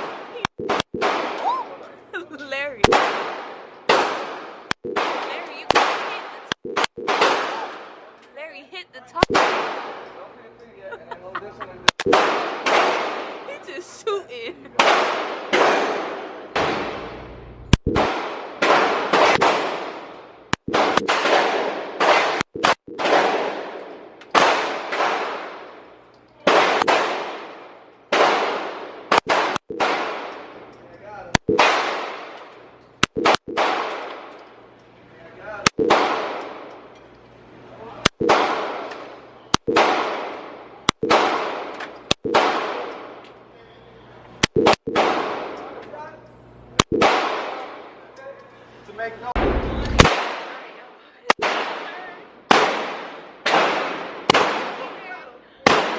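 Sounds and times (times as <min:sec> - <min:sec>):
heavy gunshots echoing: 0:00.0 - 0:01.4, 0:02.8 - 0:08.1, 0:09.2 - 0:10.2, 0:12.0 - 0:13.6, 0:14.8 - 0:17.3, 0:17.9 - 0:25.8, 0:26.4 - 0:30.6, 0:31.4 - 0:32.4, 0:33.2 - 0:34.3, 0:35.7 - 0:36.7, 0:38.1 - 0:38.9, 0:39.6 - 0:43.2, 0:44.6 - 0:45.6, 0:46.9 - 0:47.9, 0:49.4 - 0:55.9
sharp gunshot cracks: 0:00.0 - 0:01.4, 0:02.8 - 0:08.0, 0:09.2 - 0:10.0, 0:11.9 - 0:13.5, 0:14.8 - 0:25.8, 0:26.5 - 0:30.5, 0:31.4 - 0:32.4, 0:33.0 - 0:34.3, 0:35.7 - 0:36.7, 0:38.0 - 0:43.1, 0:44.4 - 0:45.6, 0:46.8 - 0:47.7, 0:49.4 - 0:50.7, 0:51.3 - 0:54.9, 0:55.7 - 0:55.9.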